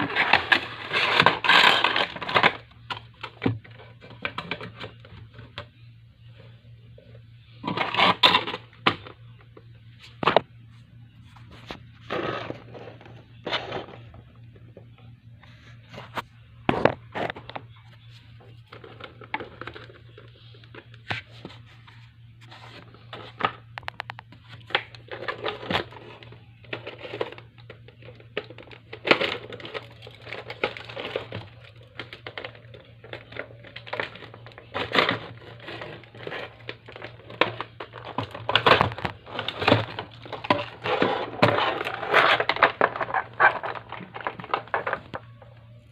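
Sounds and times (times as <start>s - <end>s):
packaging crinkling and tearing: 0.0s - 2.7s, 22.5s - 45.3s
low steady hum: 0.0s - 45.9s.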